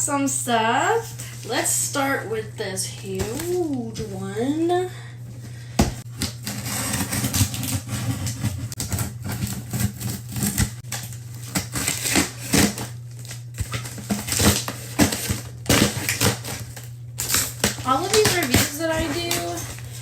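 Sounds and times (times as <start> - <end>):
steady low hum: 0.0 - 20.0
packaging crackling and rustling: 6.3 - 20.0.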